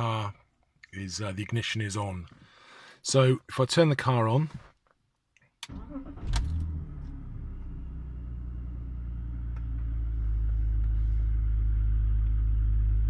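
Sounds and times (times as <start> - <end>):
car engine starting and idling: 5.6 - 13.0.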